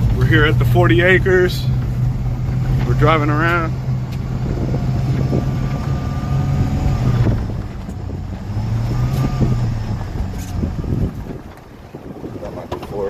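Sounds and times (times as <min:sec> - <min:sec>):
truck engine droning: 0:00.0 - 0:13.0.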